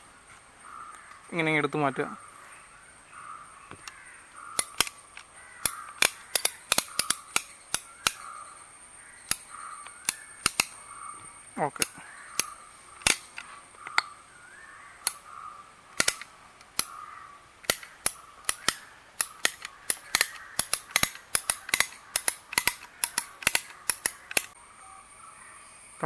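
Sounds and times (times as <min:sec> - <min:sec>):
caulking gun trigger clicking: 0:03.8 - 0:08.3, 0:09.2 - 0:10.8, 0:11.8 - 0:14.1, 0:15.0 - 0:15.2, 0:16.0 - 0:17.0, 0:17.6 - 0:24.5.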